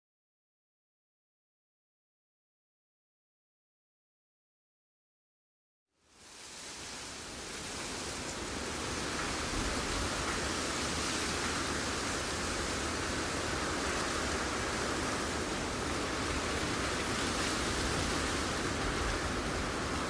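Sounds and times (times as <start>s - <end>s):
steady static hiss: 6.0s - 20.0s.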